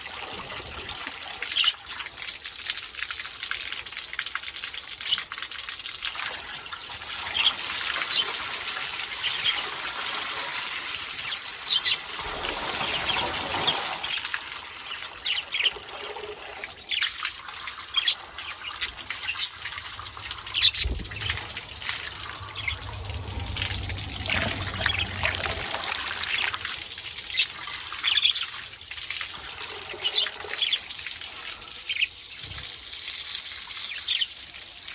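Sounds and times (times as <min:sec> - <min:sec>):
water trickling and splashing: 0:00.0 - 0:34.9
birds chirping: 0:16.8 - 0:26.7, 0:27.3 - 0:28.6
wings flapping: 0:19.2 - 0:26.6.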